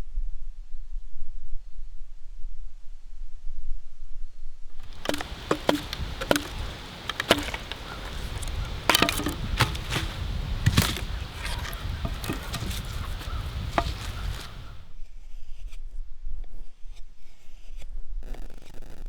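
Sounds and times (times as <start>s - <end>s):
dry wood cracking and snapping: 4.8s - 14.8s.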